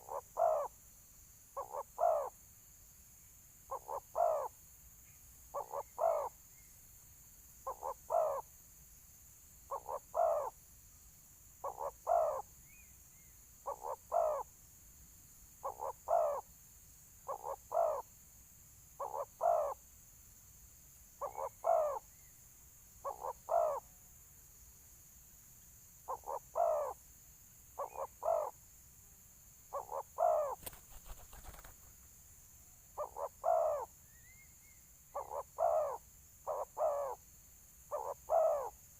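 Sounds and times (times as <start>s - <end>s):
dove cooing: 0.0s - 0.7s, 1.6s - 2.3s, 3.7s - 4.5s, 5.5s - 6.3s, 7.7s - 8.4s, 9.7s - 10.5s, 11.6s - 12.4s, 13.7s - 14.4s, 15.6s - 16.4s, 17.3s - 18.0s, 19.0s - 19.8s, 21.2s - 22.0s, 23.0s - 23.8s, 26.1s - 27.0s, 27.8s - 28.5s, 29.7s - 31.7s, 33.0s - 33.9s, 35.2s - 37.2s, 37.9s - 38.8s.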